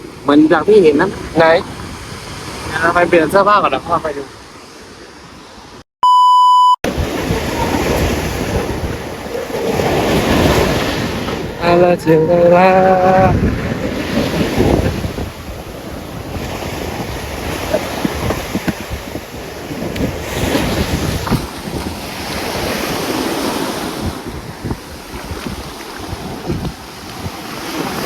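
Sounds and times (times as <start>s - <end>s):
wind buffeting microphone: 0.0s - 4.3s, 6.9s - 28.0s
sea waves washing onto beach: 0.0s - 5.8s, 6.9s - 28.0s.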